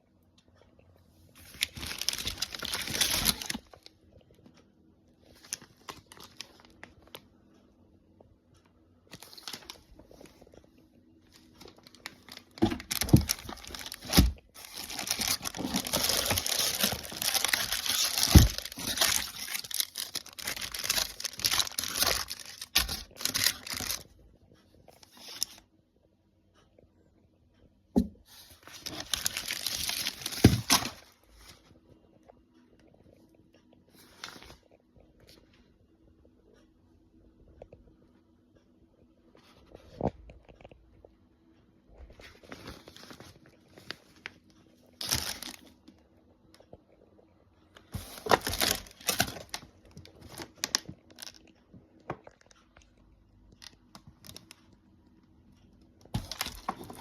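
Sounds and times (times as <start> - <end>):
packaging crinkling and tearing: 1.4 - 3.9, 5.3 - 7.2, 11.3 - 24.1, 28.6 - 31.6, 45.0 - 45.7, 48.0 - 51.6, 56.2 - 57.0
packaging rustling: 1.4 - 3.9, 5.3 - 7.2, 11.3 - 24.1, 28.3 - 31.6, 45.0 - 45.7, 47.9 - 51.4, 56.1 - 57.0.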